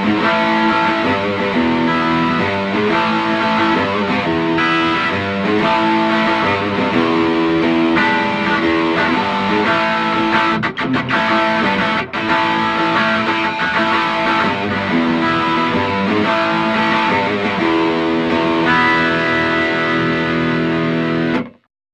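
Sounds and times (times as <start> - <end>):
overdriven electric guitar chords: 0.0 - 21.7.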